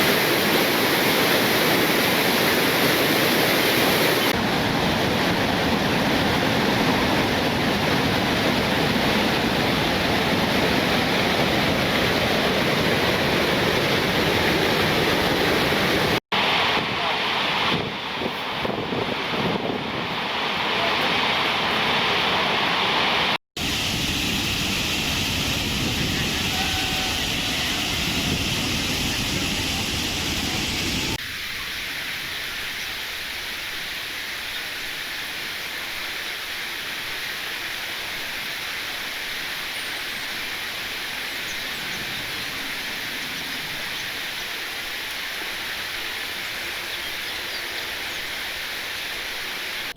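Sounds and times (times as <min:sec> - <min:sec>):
waterfall rushing: 0:00.0 - 0:31.2.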